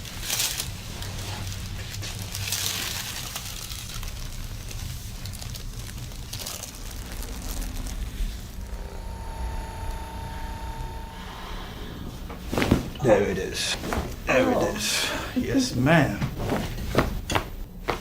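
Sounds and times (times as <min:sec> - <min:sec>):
faint rustling: 0:00.0 - 0:15.1
low steady hum: 0:00.0 - 0:18.0
person breathing out slowly: 0:11.1 - 0:12.4.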